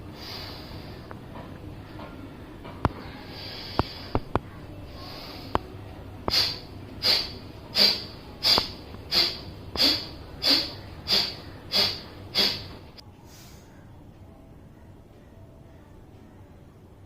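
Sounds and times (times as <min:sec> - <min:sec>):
soft breath: 0:00.0 - 0:01.2, 0:02.9 - 0:14.0
forceful nasal exhalations: 0:00.2 - 0:01.1, 0:02.9 - 0:04.3, 0:04.9 - 0:05.7, 0:06.3 - 0:13.7.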